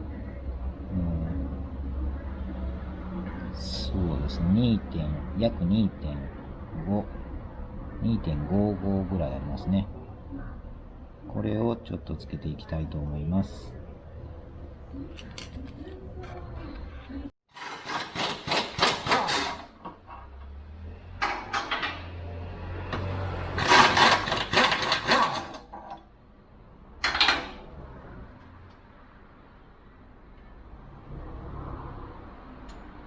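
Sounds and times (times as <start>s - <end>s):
hand tools clicking and knocking: 17.5s - 20.5s, 23.0s - 26.0s.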